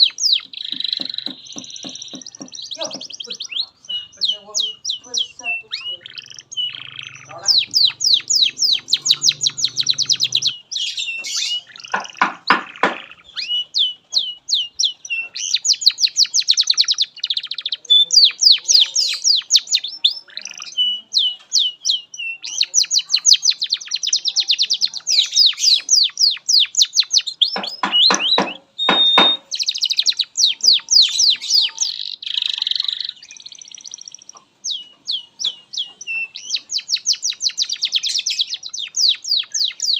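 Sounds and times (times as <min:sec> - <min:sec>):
canary singing: 0:00.0 - 0:39.9.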